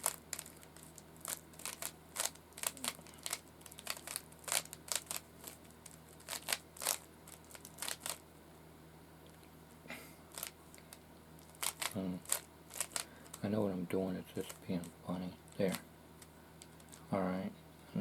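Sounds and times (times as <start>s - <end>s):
plastic puzzle cube clicking: 1.3s - 5.2s, 11.5s - 13.0s.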